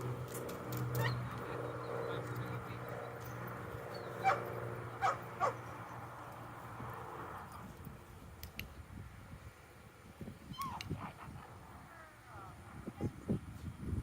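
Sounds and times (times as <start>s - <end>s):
steady low hum: 0.0s - 14.0s
dog yipping: 4.2s - 4.4s, 5.0s - 5.6s, 10.5s - 10.8s.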